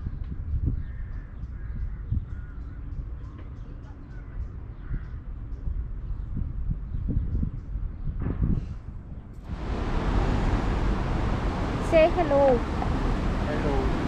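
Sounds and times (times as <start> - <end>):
wind on microphone: 0.0 - 3.3, 4.2 - 14.0.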